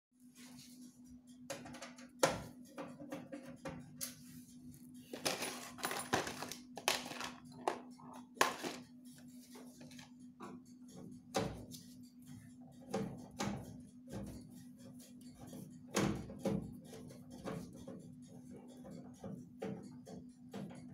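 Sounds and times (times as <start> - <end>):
hard objects clicking and clattering: 5.1 - 8.9.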